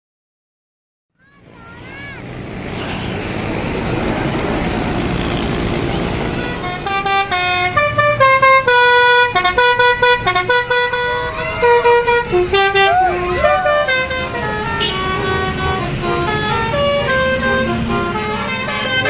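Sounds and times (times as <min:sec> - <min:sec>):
bus musical horn tune: 0:05.2 - 0:19.0.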